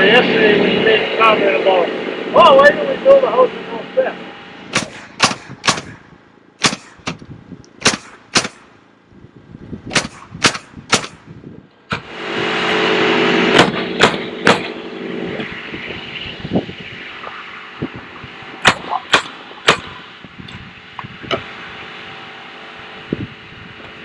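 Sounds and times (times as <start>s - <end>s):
loud steady machine noise: 0.0s - 24.0s
nails driven into wood: 4.7s - 6.0s, 6.6s - 7.2s, 7.8s - 8.7s, 9.9s - 11.2s, 13.6s - 14.8s, 18.6s - 19.9s.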